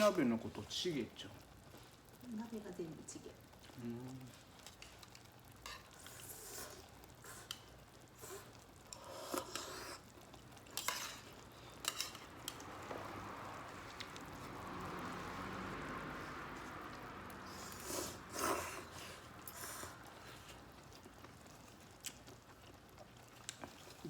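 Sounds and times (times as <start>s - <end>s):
steady hiss: 5.8s - 12.2s.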